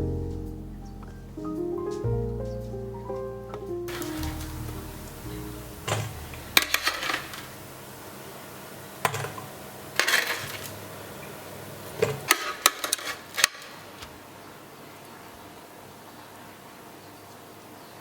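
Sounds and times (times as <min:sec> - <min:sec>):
dishes and utensils clinking: 0:05.9 - 0:07.5.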